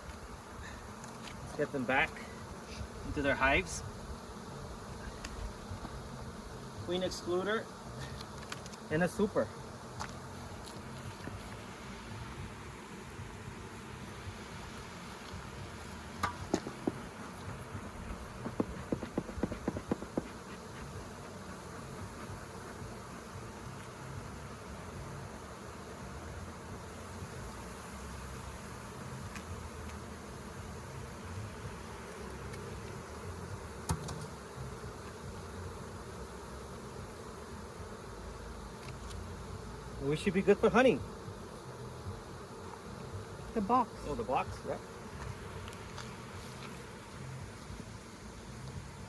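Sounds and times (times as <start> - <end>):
honeybees buzzing: 0.0 - 49.0
sharp knocks: 16.2 - 17.2, 18.4 - 20.3.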